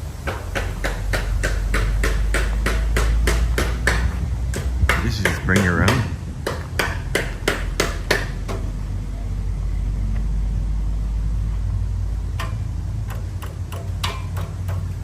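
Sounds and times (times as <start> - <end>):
sharp knocks: 0.2 - 8.7, 12.4 - 15.0
low rumble: 6.1 - 13.1.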